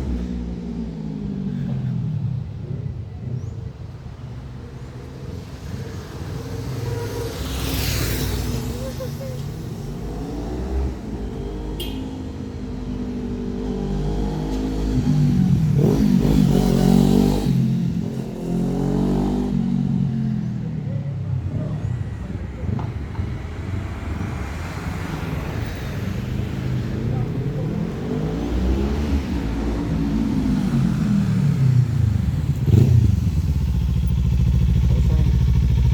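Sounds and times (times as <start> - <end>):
motorcycle engine slowing and idling: 0.0 - 24.4, 27.1 - 35.9
motorcycle engine passing by: 5.4 - 12.2, 28.3 - 35.9.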